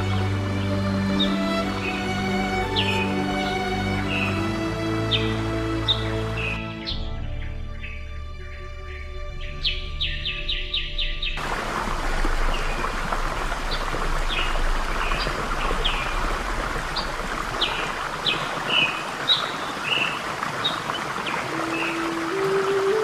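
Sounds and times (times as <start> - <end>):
stream rushing: 0.0 - 7.0, 11.4 - 23.0
low steady musical tone: 0.0 - 11.4, 21.5 - 23.0
birds chirping: 0.0 - 23.0.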